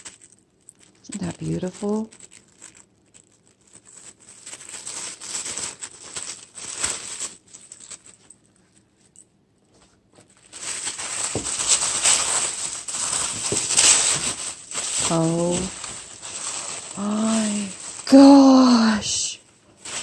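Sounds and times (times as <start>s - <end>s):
wrapping paper crinkling: 0.0s - 9.1s, 10.2s - 20.0s.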